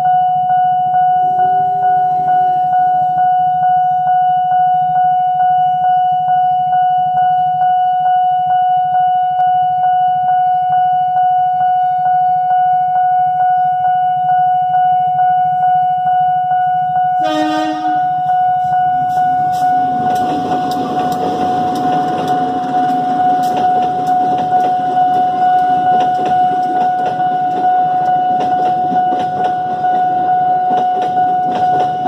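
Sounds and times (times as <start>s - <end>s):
level crossing warning siren: 0.0s - 32.0s
short horn blast: 17.2s - 18.3s.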